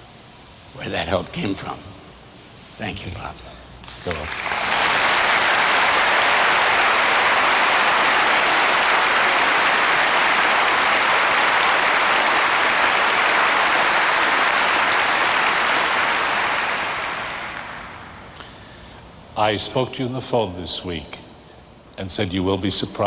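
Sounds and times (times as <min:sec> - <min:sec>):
crowd applauding: 0:03.8 - 0:18.4.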